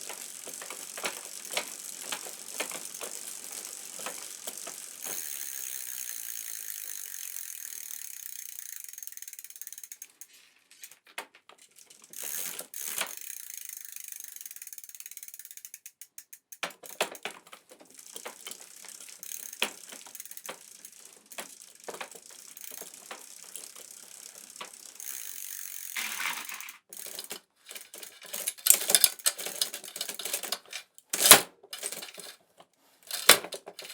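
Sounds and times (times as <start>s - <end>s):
bicycle freewheel ratcheting: 0.0s - 11.0s, 11.6s - 32.3s, 33.1s - 33.9s
chain clicks and rattles: 0.0s - 11.0s, 11.6s - 32.4s, 33.1s - 33.9s.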